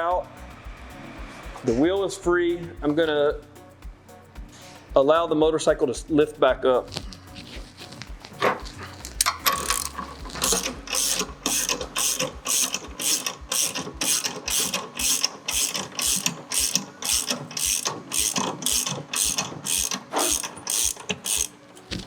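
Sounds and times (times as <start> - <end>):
motorcycle jack ratcheting: 6.9 - 22.0.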